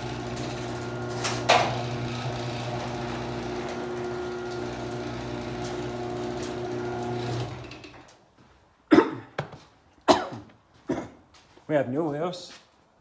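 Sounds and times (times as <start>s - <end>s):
garage door opener motor humming: 0.0s - 8.1s
person coughing: 8.9s - 9.4s, 10.1s - 11.2s.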